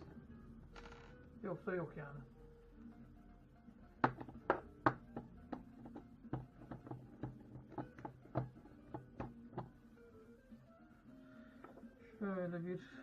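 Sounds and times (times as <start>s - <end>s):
plastic housing knocks and clicks: 4.0s - 9.7s.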